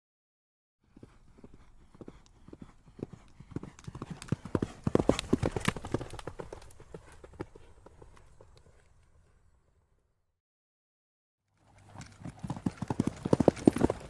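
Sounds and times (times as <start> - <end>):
horse hooves clip-clopping: 0.9 - 9.3, 11.6 - 14.0.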